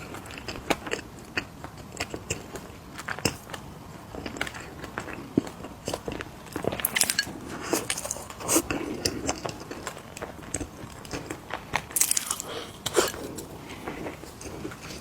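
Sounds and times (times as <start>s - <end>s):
crunching and chewing cookies: 0.0s - 15.0s.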